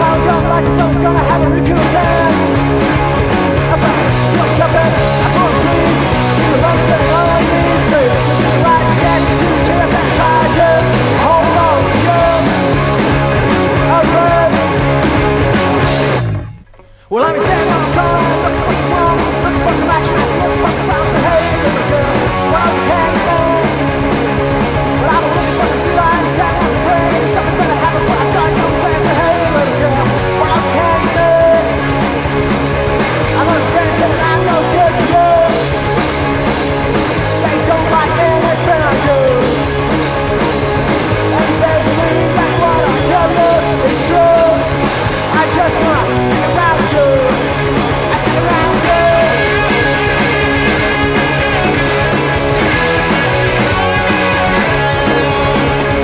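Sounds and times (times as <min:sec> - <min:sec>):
rock and roll band with singing: 0:00.0 - 0:56.0.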